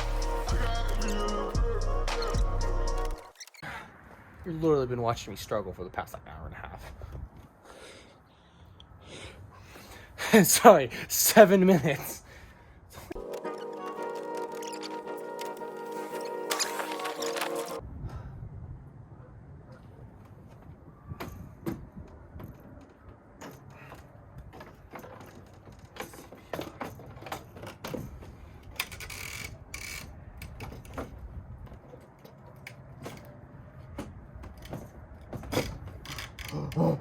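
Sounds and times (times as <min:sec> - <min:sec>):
scraping rustle: 0:13.0 - 0:17.8
tools and parts clicking and clattering: 0:13.1 - 0:17.8, 0:20.4 - 0:36.8.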